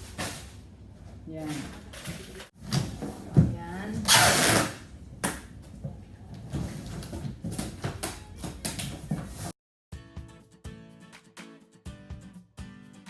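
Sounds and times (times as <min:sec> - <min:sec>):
cardboard and packing tape rustling: 0:00.0 - 0:00.7, 0:01.4 - 0:04.8, 0:06.4 - 0:09.6
guitar music: 0:10.0 - 0:13.0.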